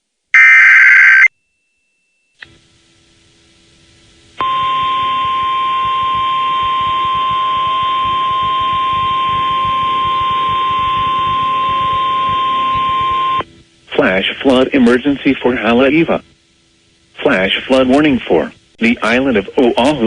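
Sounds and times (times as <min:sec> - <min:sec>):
broadcast hiss: 0:02.4 - 0:20.0.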